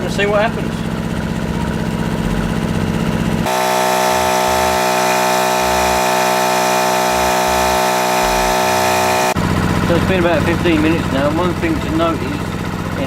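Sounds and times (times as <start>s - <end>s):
generator engine running: 0.0s - 13.0s
buzzing hum: 3.4s - 9.6s.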